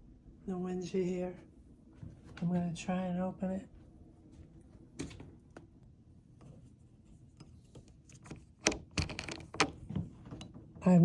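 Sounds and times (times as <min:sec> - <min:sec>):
door latch clicking: 0:08.2 - 0:09.8
door knocking and rattling: 0:08.6 - 0:10.8.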